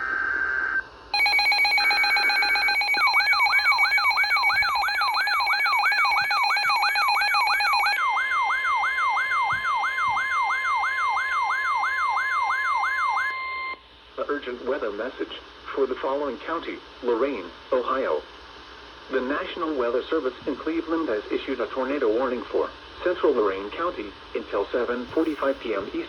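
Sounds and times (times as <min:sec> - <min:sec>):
siren wail rising in pitch: 0:01.2 - 0:13.4
shrill attention tone: 0:01.2 - 0:13.7.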